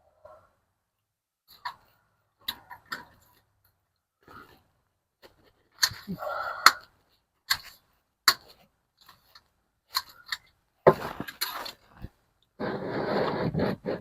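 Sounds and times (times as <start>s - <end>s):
metal scrape: 12.6s - 14.0s.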